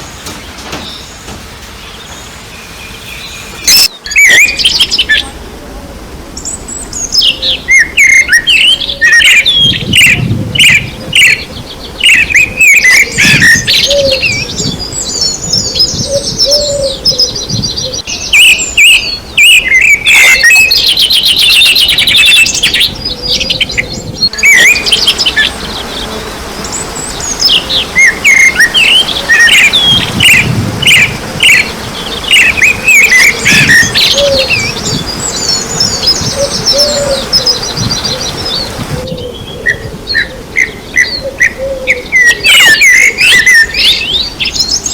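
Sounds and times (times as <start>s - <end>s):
songbirds chirping and singing: 0.0s - 44.9s.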